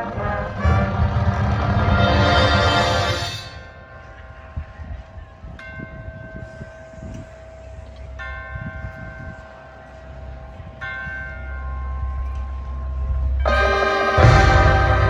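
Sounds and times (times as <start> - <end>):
low rumble: 0.0 - 3.9, 12.8 - 15.0
marching band sustained chord: 0.0 - 4.2, 13.4 - 15.0
church bell tones ringing: 5.6 - 15.0.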